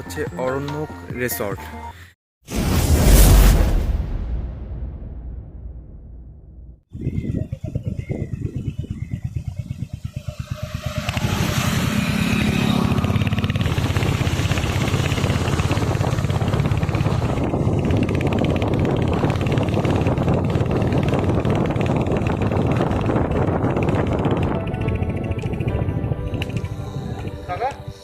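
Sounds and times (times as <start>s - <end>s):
motorcycle engine idling and revving: 7.0s - 28.0s.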